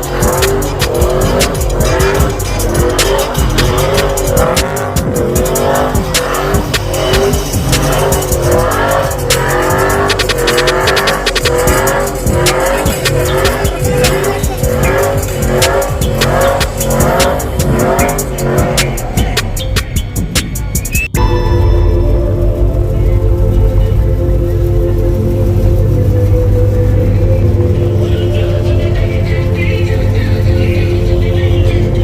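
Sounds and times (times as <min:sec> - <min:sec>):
tyres squealing: 0:00.0 - 0:21.2
music with steady beat: 0:00.0 - 0:32.0.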